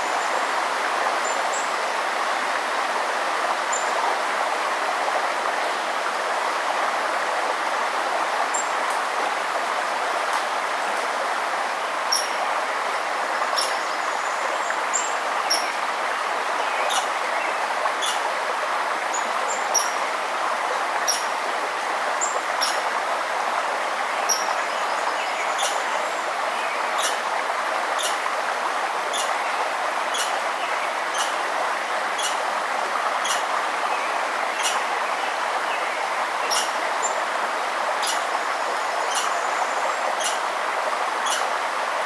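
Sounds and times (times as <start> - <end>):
flowing river: 0.0 - 42.0
bird chirping: 36.5 - 37.2.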